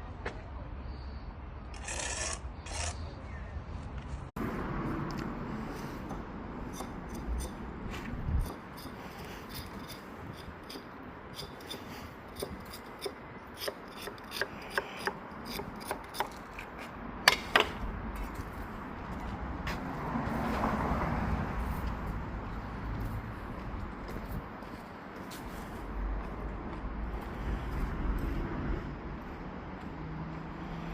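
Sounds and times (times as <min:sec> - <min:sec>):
trowel scraping mortar: 0:01.8 - 0:03.1
trowel tapping bricks: 0:08.4 - 0:16.7.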